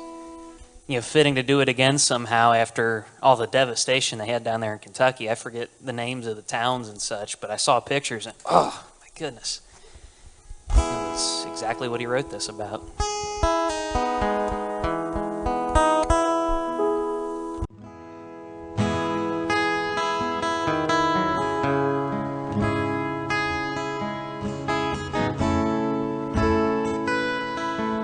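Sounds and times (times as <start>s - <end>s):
bass notes: 10.5s - 17.7s, 18.7s - 28.0s
strummed acoustic guitar music: 10.6s - 28.0s.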